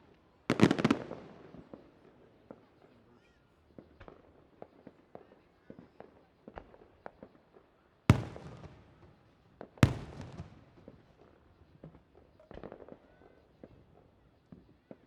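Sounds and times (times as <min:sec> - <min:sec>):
firework pops and crackles: 0:00.5 - 0:02.9, 0:03.7 - 0:15.0
loud firework booms: 0:09.8 - 0:10.6.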